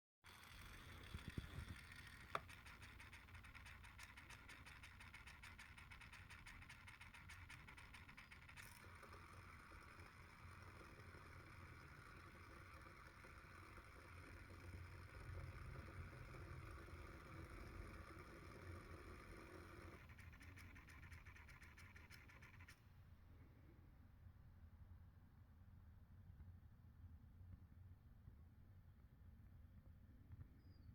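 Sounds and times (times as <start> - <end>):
fine rapid ticking: 0.3 - 22.8
lens autofocus motor noise: 0.3 - 22.8
faint motor whine: 0.3 - 30.9
click: 1.4 - 3.2.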